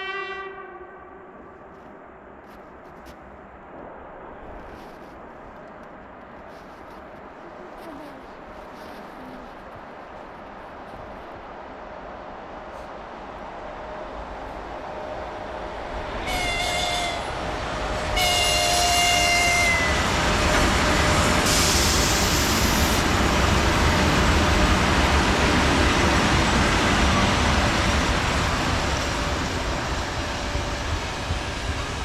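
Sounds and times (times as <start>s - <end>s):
locomotive horn blasts: 0.0s - 1.3s, 16.2s - 17.3s, 18.2s - 20.0s
train rumbling on rails: 0.0s - 32.0s.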